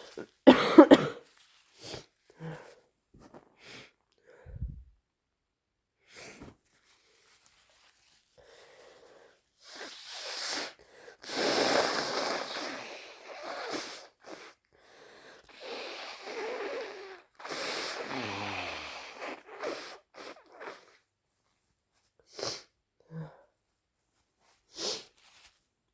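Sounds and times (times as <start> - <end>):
person blowing congested nose: 0.0 - 1.2, 8.5 - 21.0, 22.3 - 22.7, 24.7 - 25.2
person sniffing: 9.7 - 14.6, 15.6 - 21.0.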